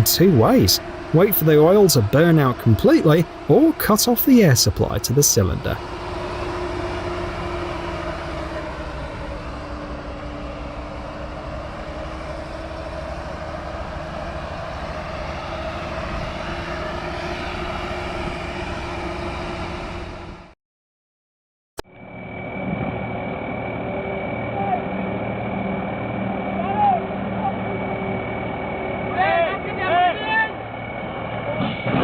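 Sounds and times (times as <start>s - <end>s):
diesel engine racing at high revs: 0.0s - 20.5s
steady engine whine: 0.0s - 20.6s, 21.8s - 32.0s.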